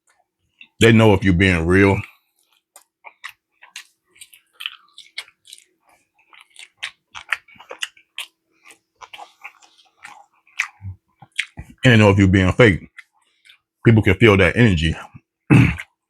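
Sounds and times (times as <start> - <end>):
person chewing food: 0.0 - 0.8, 1.8 - 11.9, 12.8 - 13.8.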